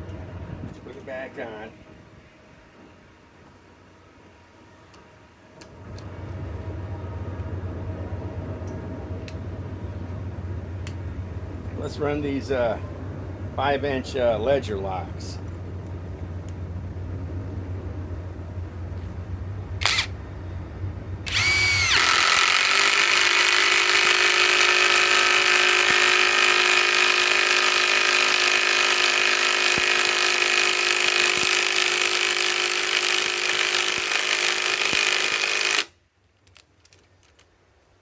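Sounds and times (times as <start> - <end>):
impact driver hammering screw: 21.3 - 35.9.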